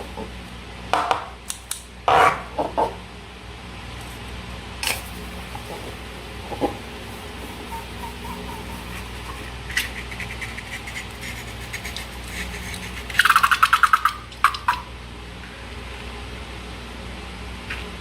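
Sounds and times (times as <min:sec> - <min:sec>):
rapid run of clicks: 0:04.8 - 0:14.9
small sticky clicks: 0:09.2 - 0:14.8.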